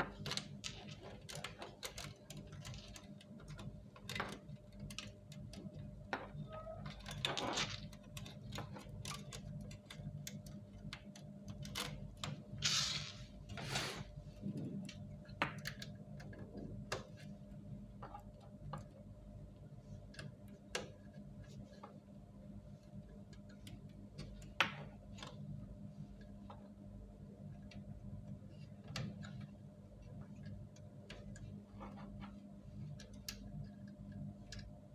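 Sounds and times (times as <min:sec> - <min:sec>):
steady low hum: 0:09.9 - 0:34.9
scraping rustles: 0:12.6 - 0:14.6.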